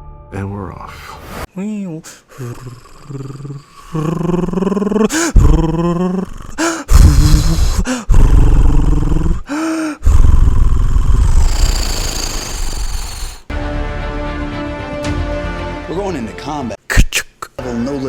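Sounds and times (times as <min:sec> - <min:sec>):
man imitating jet noises: 0:01.9 - 0:13.5.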